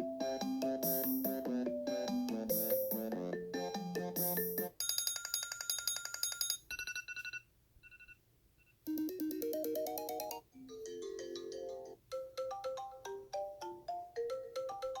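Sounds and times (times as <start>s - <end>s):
fast high electronic tone pattern: 0.0s - 4.7s
melodic phone ringtone: 0.0s - 7.4s, 8.9s - 15.0s.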